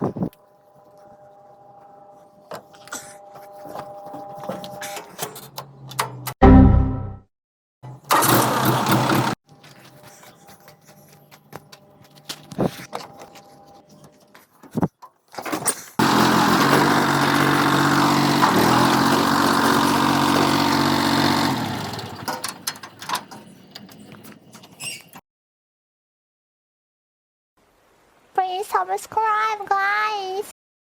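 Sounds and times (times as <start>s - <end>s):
engine running: 8.1s - 9.4s, 16.0s - 23.5s.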